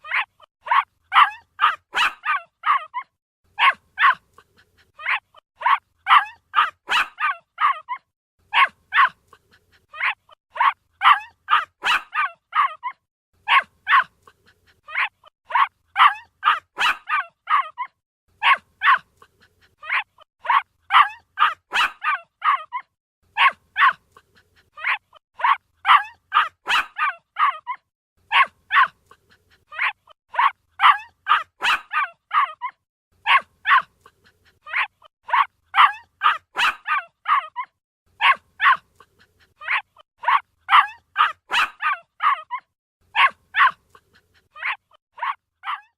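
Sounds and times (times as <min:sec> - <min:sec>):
puppy yapping: 0:00.0 - 0:22.8, 0:23.4 - 0:45.9.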